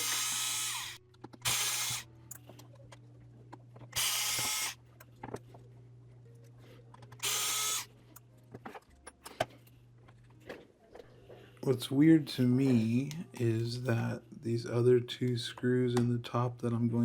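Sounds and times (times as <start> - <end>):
electric screwdriver whirring: 0.0 - 2.1, 3.9 - 4.8, 7.2 - 7.9
screws and parts clicking: 0.0 - 5.1, 6.9 - 10.3.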